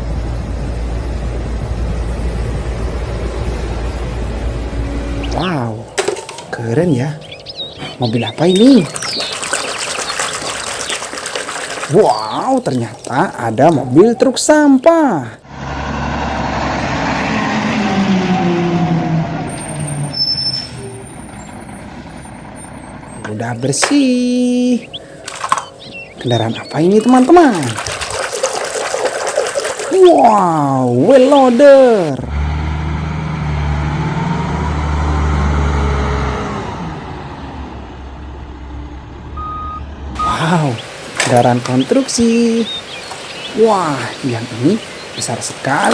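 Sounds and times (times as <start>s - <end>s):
heavy vehicle engine humming: 0.0s - 9.8s, 15.4s - 26.6s, 31.7s - 45.8s
water running: 6.0s - 15.0s, 23.3s - 32.2s, 40.2s - 45.9s
short beep: 39.4s - 40.4s.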